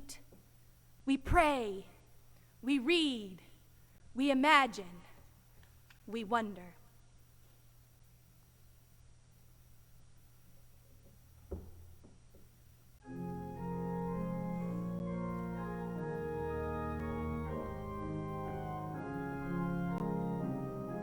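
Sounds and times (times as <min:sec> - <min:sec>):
faint knocks: 0:10.8 - 0:12.6
organ playing slow chords: 0:13.0 - 0:21.0.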